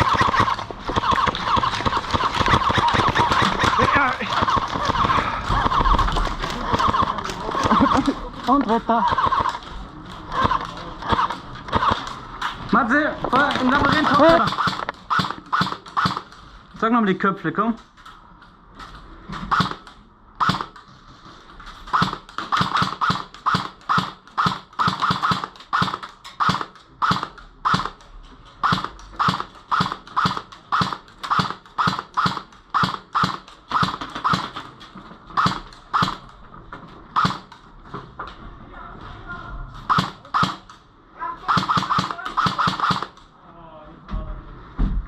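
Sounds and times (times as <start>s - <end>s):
airsoft gun shots: 0.0s - 8.1s, 9.1s - 9.6s, 10.4s - 12.1s, 13.4s - 16.4s, 19.5s - 20.8s, 21.9s - 28.0s, 28.6s - 34.6s, 35.3s - 36.3s, 37.2s - 37.6s, 39.9s - 40.7s, 41.4s - 43.2s.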